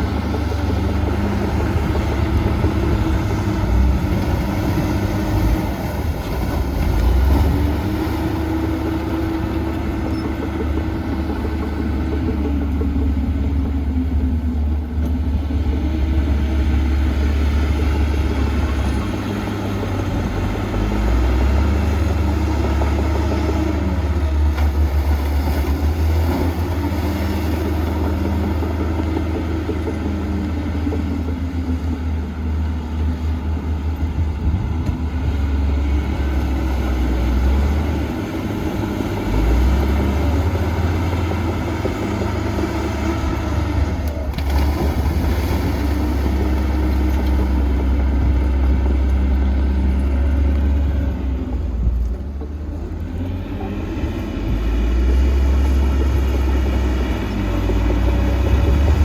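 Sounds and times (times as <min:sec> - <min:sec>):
heavy diesel machinery engine: 0:00.0 - 0:59.0.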